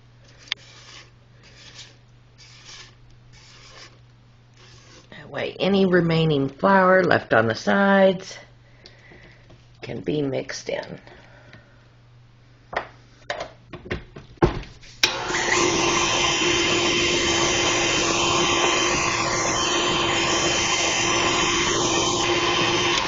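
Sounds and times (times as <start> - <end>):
stand mixer running: 15.1 - 23.0.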